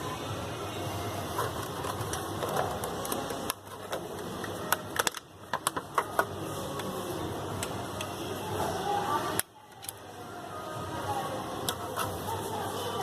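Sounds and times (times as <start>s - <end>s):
plastic clicks and taps: 3.1s - 6.9s.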